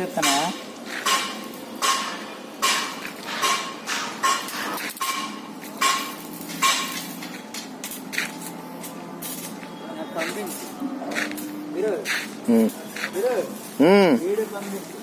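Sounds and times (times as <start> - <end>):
hammer striking metal: 0.2 - 7.2.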